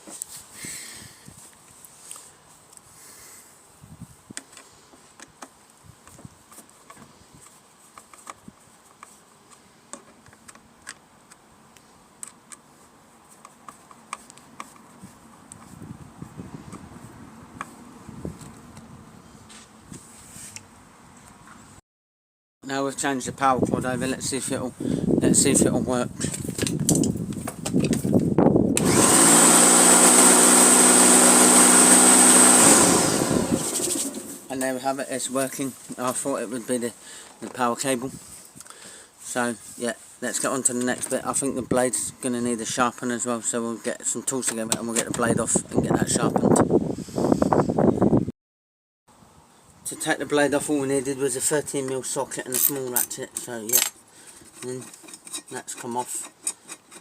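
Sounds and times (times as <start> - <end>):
electric lawnmower motor whining: 28.8 - 34.5.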